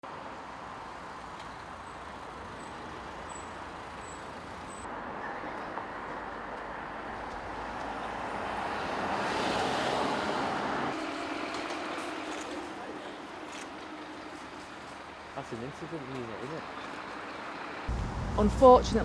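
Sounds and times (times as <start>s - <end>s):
road traffic noise: 17.9s - 19.0s
vehicle passing close: 17.9s - 19.0s.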